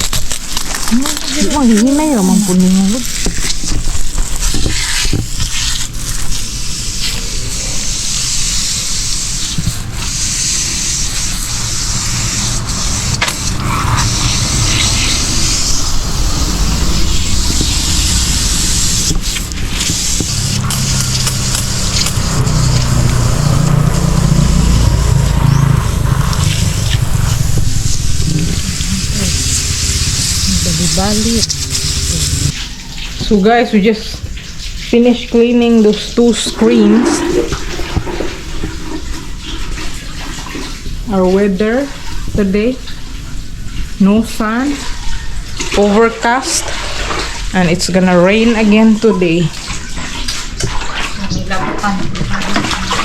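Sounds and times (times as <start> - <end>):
pressure washer spray hissing: 0.0 - 32.6
low motor hum: 7.2 - 32.6.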